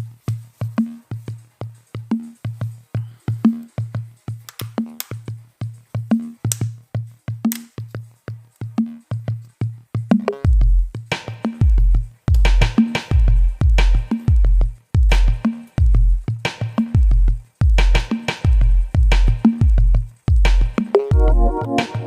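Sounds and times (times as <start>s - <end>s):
electronic music with drum machine: 10.0s - 22.0s
heavy bass line: 21.1s - 22.0s.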